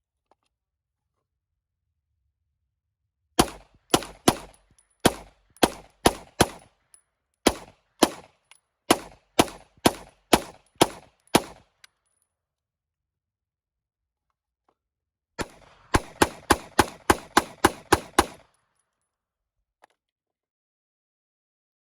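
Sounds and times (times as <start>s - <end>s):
semi-automatic gunfire: 3.4s - 6.7s, 7.4s - 11.7s, 15.4s - 18.5s.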